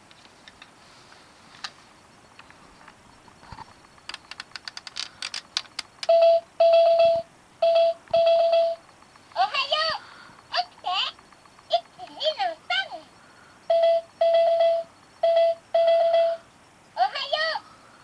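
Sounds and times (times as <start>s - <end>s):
sharp plastic clicks: 3.6s - 6.2s
alarm clock beeping: 6.0s - 8.8s, 11.0s - 16.5s.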